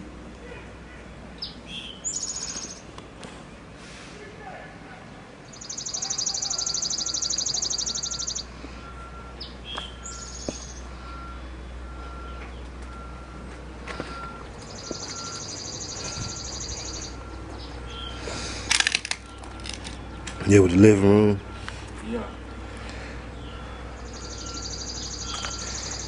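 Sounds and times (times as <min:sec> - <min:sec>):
songbird trilling: 0:01.4 - 0:02.8, 0:05.5 - 0:08.5, 0:09.4 - 0:10.9, 0:14.5 - 0:18.2, 0:23.3 - 0:26.0
faint short beep: 0:05.6 - 0:11.4, 0:13.9 - 0:17.2.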